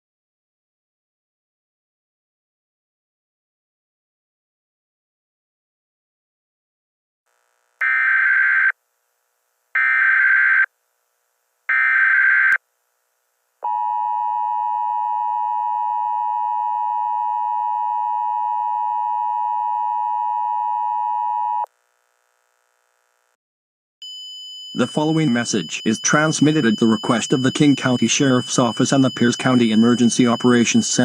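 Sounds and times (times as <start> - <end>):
two-tone attention signal: 24.0 - 31.0
digital data tone bursts: 24.8 - 31.0.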